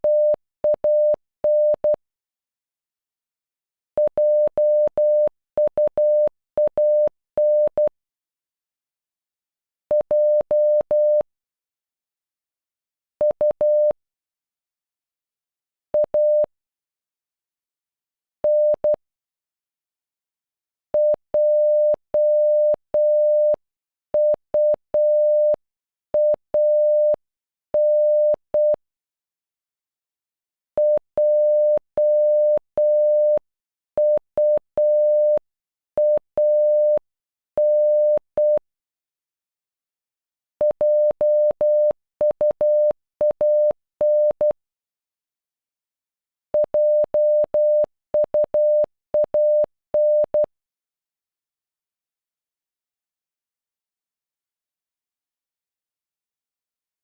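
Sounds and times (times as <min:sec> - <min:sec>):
morse code beeps: 0:04.1 - 0:07.9, 0:21.0 - 0:23.6, 0:24.2 - 0:25.6, 0:26.2 - 0:27.2, 0:27.8 - 0:28.8, 0:30.8 - 0:33.4, 0:34.0 - 0:35.4, 0:36.0 - 0:37.0, 0:37.6 - 0:38.6, 0:40.6 - 0:44.6, 0:46.6 - 0:50.5.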